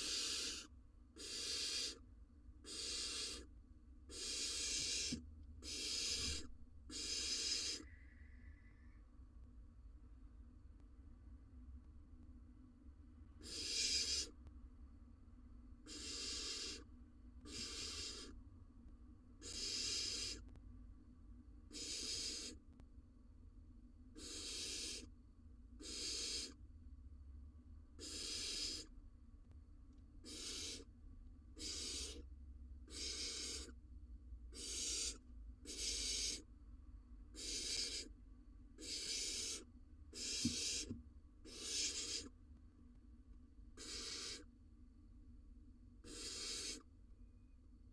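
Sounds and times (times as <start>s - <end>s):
owl chick hissing begging calls: 0.0s - 3.5s, 4.1s - 9.0s, 13.4s - 14.4s, 15.8s - 18.4s, 19.4s - 20.5s, 21.7s - 22.6s, 24.2s - 25.1s, 25.8s - 26.6s, 28.0s - 28.9s, 30.2s - 30.9s, 31.5s - 32.3s, 32.9s - 33.8s, 34.5s - 36.5s, 37.3s - 38.2s, 38.8s - 42.3s, 43.8s - 44.5s, 46.0s - 46.9s
steady low hum: 0.0s - 46.1s.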